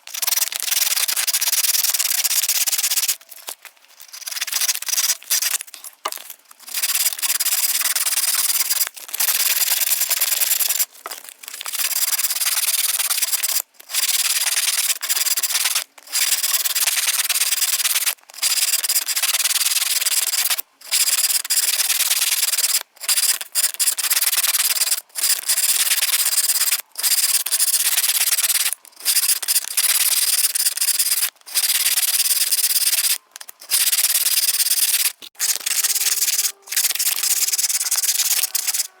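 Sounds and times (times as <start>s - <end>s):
sandpaper rubbing on wood: 34.1s - 39.0s.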